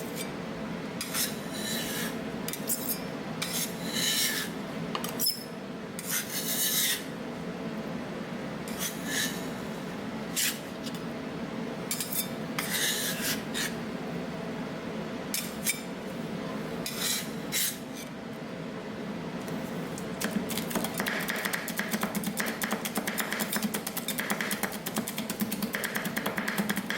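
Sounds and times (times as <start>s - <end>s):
metal spatulas scraping steel plate: 1.0s - 4.5s, 5.2s - 7.1s, 8.7s - 9.6s, 11.9s - 13.8s, 16.8s - 18.1s.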